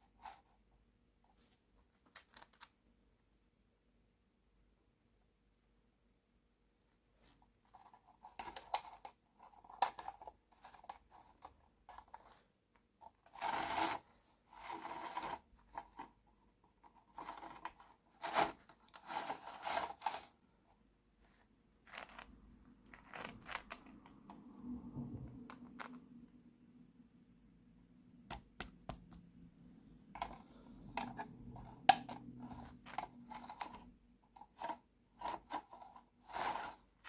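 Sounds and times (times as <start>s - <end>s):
plastic toy pieces rustling: 17.0s - 20.3s, 21.8s - 24.1s.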